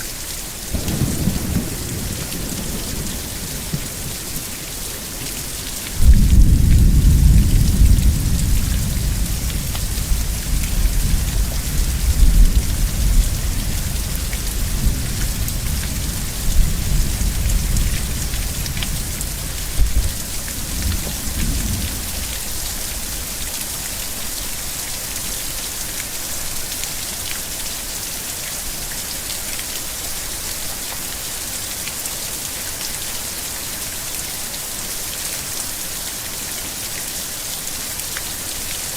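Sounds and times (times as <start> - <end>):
steady rain: 0.0 - 38.9
thunder rumble: 0.7 - 4.4, 6.0 - 22.5.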